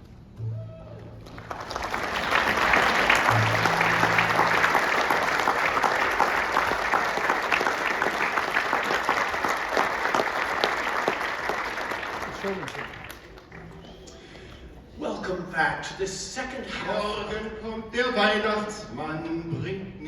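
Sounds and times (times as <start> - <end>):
audience applauding: 1.1 - 14.1.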